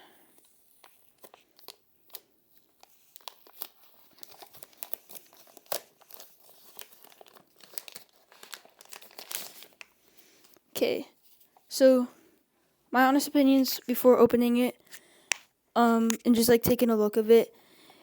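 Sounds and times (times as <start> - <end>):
packaging crinkling and tearing: 0.4 - 10.6.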